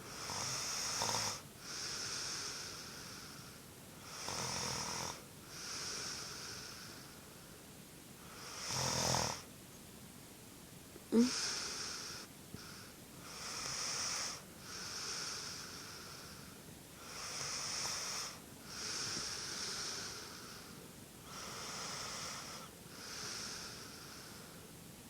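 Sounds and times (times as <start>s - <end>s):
wheezy snoring breaths: 0.0s - 9.5s, 11.1s - 24.8s.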